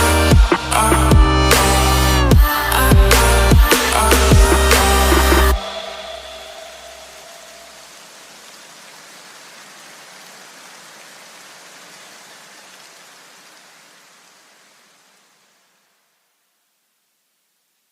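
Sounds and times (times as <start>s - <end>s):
lingering electronic music tones: 0.0s - 8.1s
steady hiss-like noise: 4.8s - 17.9s.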